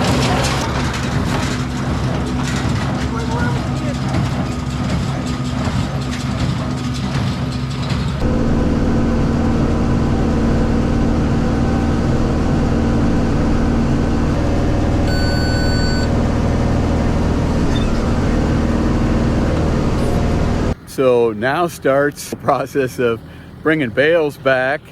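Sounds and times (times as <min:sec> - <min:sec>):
tractor engine running: 0:00.0 - 0:24.9
electronic beep: 0:15.0 - 0:16.1.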